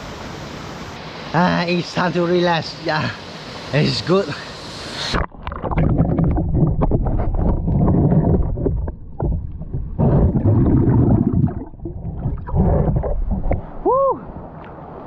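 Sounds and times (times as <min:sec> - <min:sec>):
muffled water splashing: 0:04.9 - 0:15.0.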